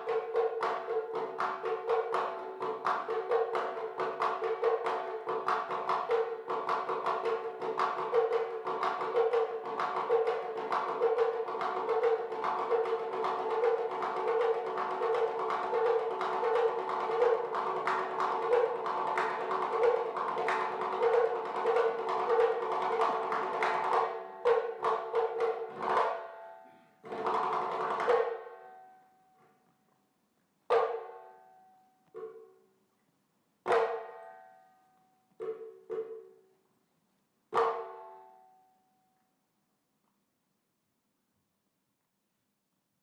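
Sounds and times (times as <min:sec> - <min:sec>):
background music with percussion: 0:00.0 - 0:29.0, 0:30.7 - 0:32.6, 0:33.6 - 0:34.5, 0:35.4 - 0:36.5, 0:37.5 - 0:38.4.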